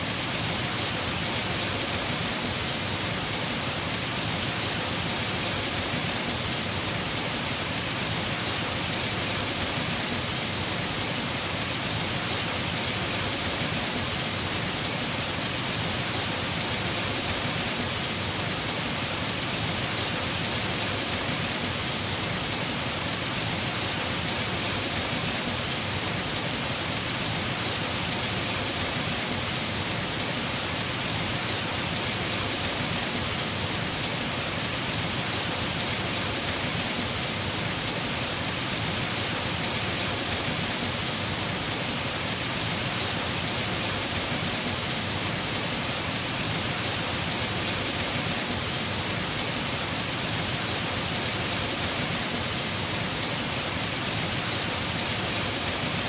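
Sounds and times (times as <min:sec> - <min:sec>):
heavy rain on a roof: 0:00.0 - 0:56.0.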